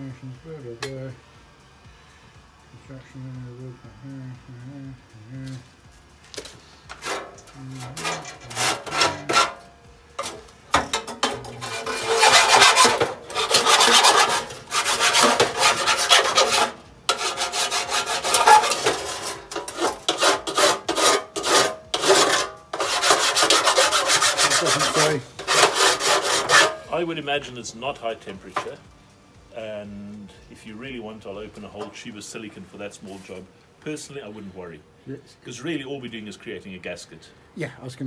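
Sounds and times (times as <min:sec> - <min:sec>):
hand file rasping: 0:06.9 - 0:27.0.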